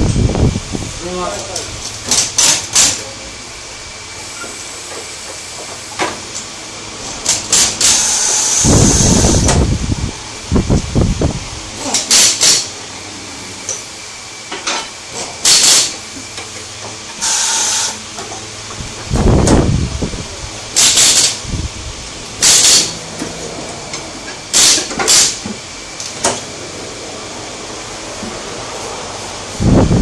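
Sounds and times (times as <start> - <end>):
compressed air hissing: 7.3 - 10.1, 10.8 - 12.8, 15.4 - 16.0, 17.2 - 18.0, 20.7 - 21.6, 22.4 - 23.5, 24.5 - 25.5.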